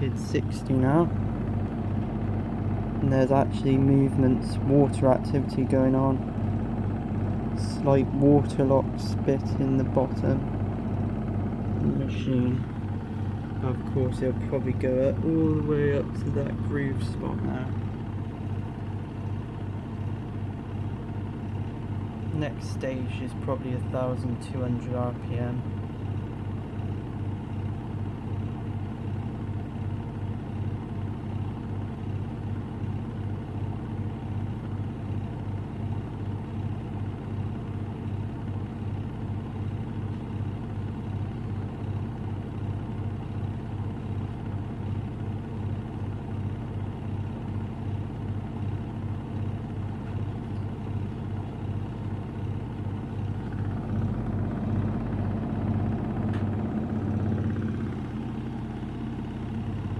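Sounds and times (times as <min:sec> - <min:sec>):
washing machine spinning: 0:00.0 - 0:59.9.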